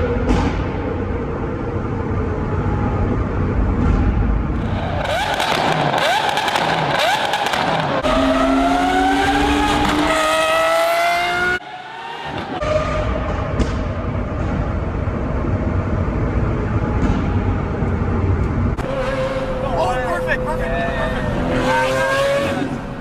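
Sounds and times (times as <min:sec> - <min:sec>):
sports car engine revving: 0:04.6 - 0:11.6, 0:20.5 - 0:23.0.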